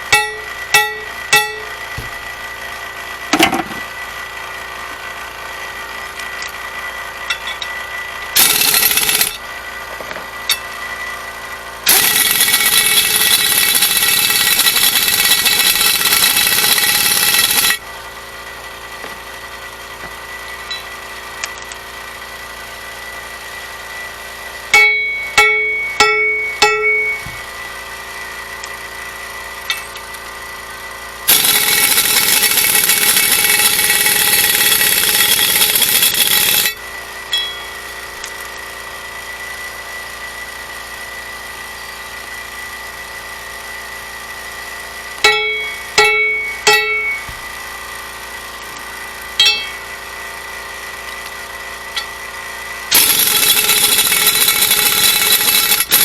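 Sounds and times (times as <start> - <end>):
ringing hammer blows on metal: 0.0 - 2.2, 24.7 - 27.4, 31.3 - 37.8, 45.2 - 47.4, 49.4 - 49.9
air impact wrench hammering: 0.0 - 2.7, 3.3 - 4.0, 8.3 - 9.4, 11.8 - 17.8, 24.7 - 27.6, 31.3 - 38.0, 45.1 - 50.0, 51.8 - 56.0.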